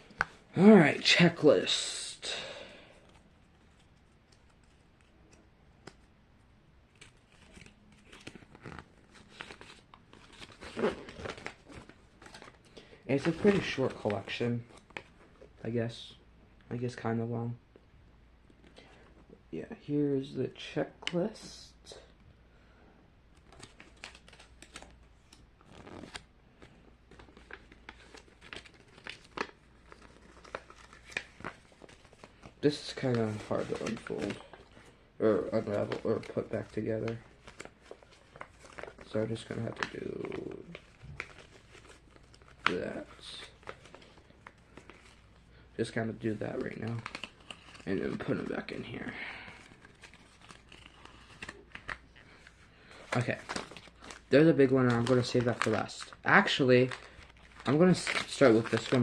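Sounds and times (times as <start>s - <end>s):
packaging crinkling and rustling: 6.9s - 15.6s, 23.4s - 59.0s.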